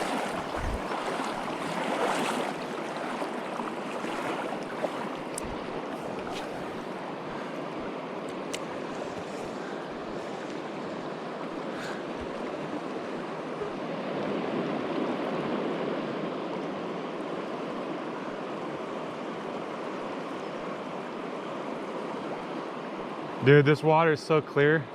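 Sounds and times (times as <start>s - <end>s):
river water rushing over rocks: 0.0s - 16.1s.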